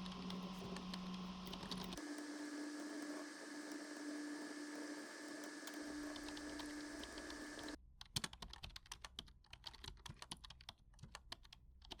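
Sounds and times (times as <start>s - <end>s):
steady hum with held tone: 0.0s - 7.8s.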